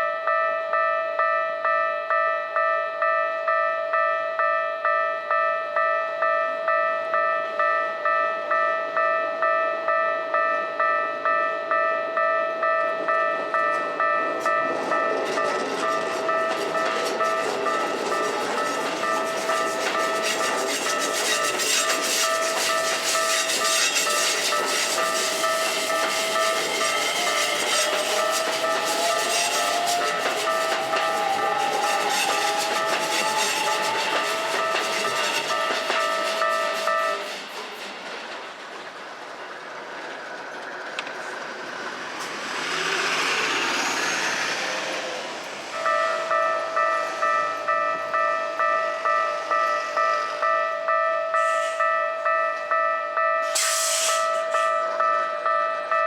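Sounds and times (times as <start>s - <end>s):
level crossing warning bell: 0.0s - 37.3s, 45.4s - 56.0s
train whine rising: 8.5s - 56.0s
train wheels clattering: 12.6s - 55.1s.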